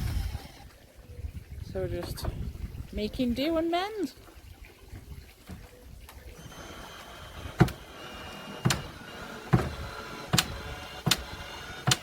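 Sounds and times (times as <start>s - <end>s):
sharp knocks: 8.6s - 12.0s.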